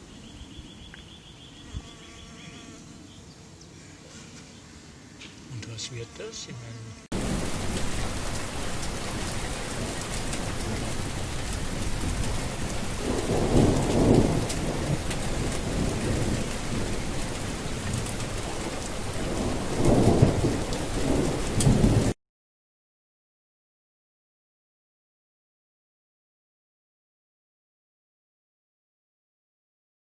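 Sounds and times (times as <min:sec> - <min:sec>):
heavy rain: 0:07.1 - 0:22.2
low rolls of thunder: 0:07.2 - 0:22.2.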